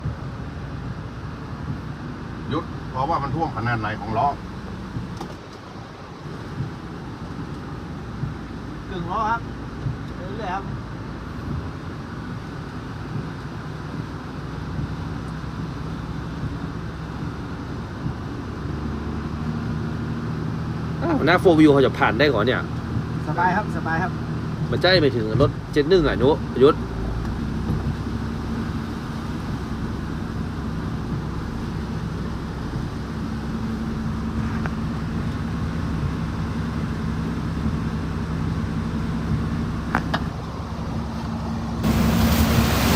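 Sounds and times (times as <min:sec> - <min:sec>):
road or water noise: 0:00.0 - 0:42.9
vehicle engine running: 0:00.0 - 0:42.9
rushing floodwater: 0:16.2 - 0:42.9.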